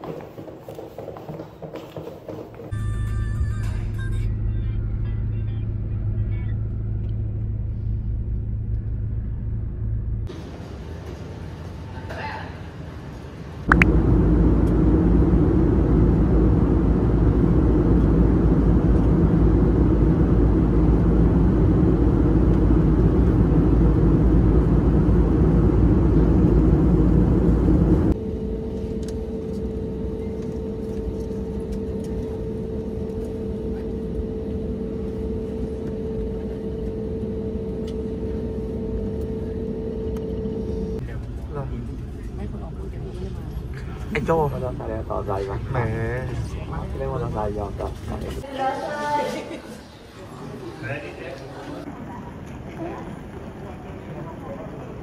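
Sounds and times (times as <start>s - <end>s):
vehicle rumble in motion: 2.8s - 11.0s, 13.6s - 44.2s
steady tonal hum: 13.7s - 49.0s.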